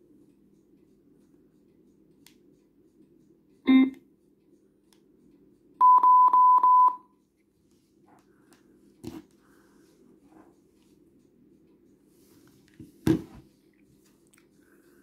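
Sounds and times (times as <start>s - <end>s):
high beeps: 5.8s - 7.0s.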